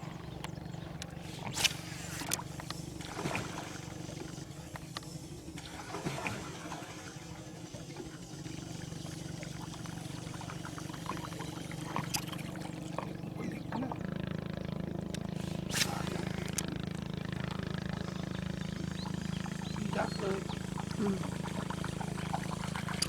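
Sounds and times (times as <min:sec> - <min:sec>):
boat motor humming: 0:00.0 - 0:23.0
sharp clicks: 0:00.3 - 0:02.8, 0:14.9 - 0:18.1.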